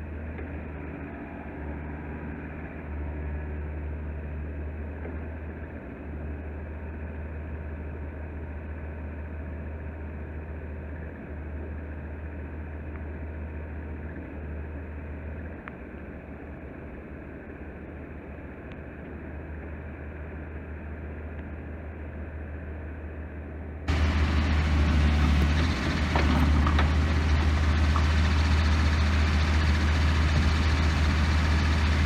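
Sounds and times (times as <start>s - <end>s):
excavator diesel engine droning: 23.9s - 32.0s.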